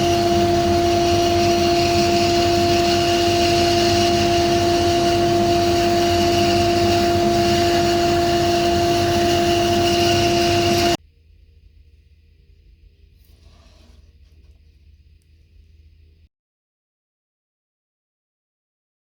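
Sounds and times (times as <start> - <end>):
bandsaw motor whine: 0.0 - 11.0.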